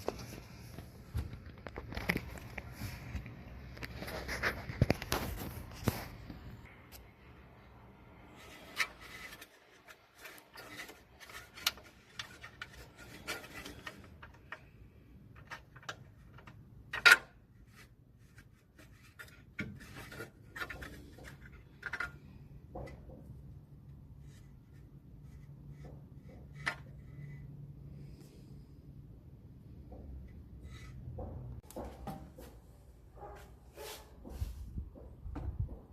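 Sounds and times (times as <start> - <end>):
metal scraping and rubbing: 8.1 - 14.6.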